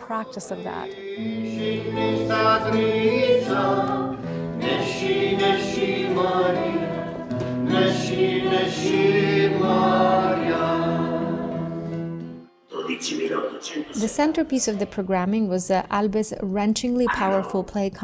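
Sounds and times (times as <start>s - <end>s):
voices singing in harmony: 0.0s - 12.0s.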